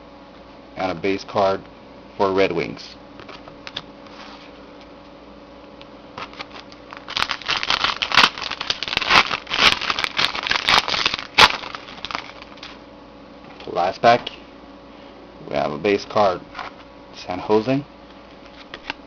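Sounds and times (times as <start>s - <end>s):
foil pack crinkling and tearing: 6.2s - 12.8s.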